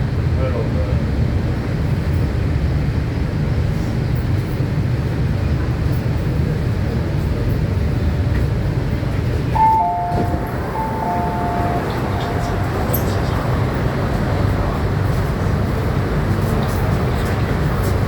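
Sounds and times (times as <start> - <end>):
train rumbling on track: 0.0 - 18.0
two-note tone: 9.6 - 13.4.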